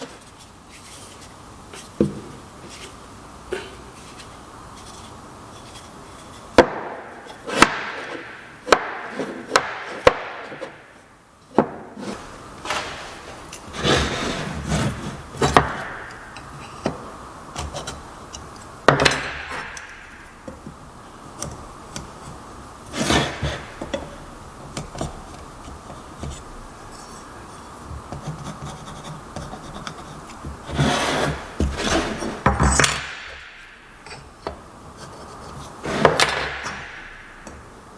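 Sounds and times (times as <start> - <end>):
wood rubbing on wood: 3.9 - 37.9
sharp wooden knocks: 6.6 - 10.9, 15.4 - 17.0, 18.8 - 20.8, 30.4 - 34.6, 35.9 - 37.8.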